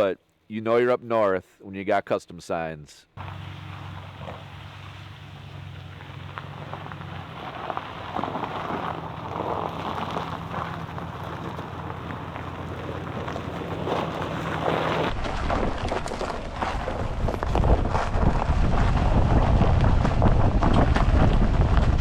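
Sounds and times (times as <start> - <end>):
engine and road hum: 3.2 - 15.2
crackling pattering noise: 3.2 - 22.0
wind rumbling on microphone: 3.2 - 22.0.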